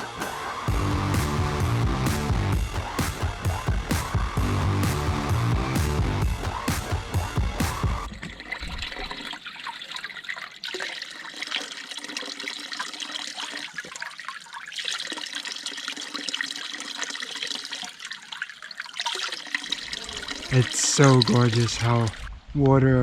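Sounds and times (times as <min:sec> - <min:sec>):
background music: 0:00.0 - 0:08.1
stream trickling over rock: 0:08.1 - 0:22.4.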